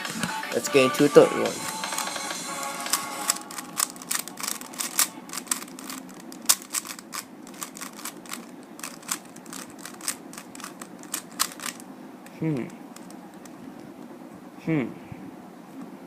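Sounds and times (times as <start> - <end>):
plastic puzzle cube clicking: 2.9 - 11.8.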